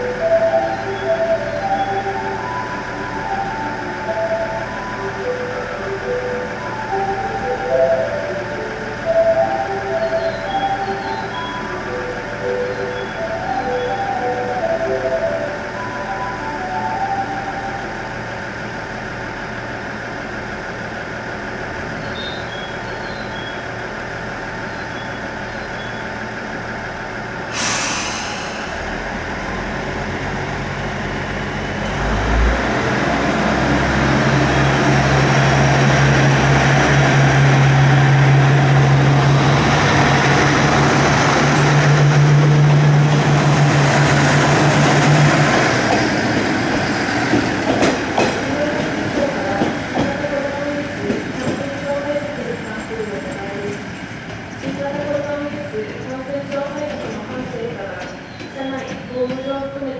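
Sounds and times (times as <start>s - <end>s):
train engine running: 0.0s - 59.9s
train air hiss: 27.4s - 29.7s.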